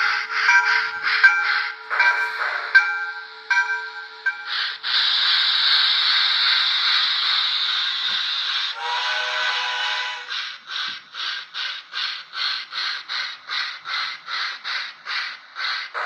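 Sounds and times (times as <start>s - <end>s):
steam hiss: 0.0s - 16.0s
steam locomotive chuffing: 0.0s - 16.0s
locomotive whistle blast: 8.8s - 10.3s.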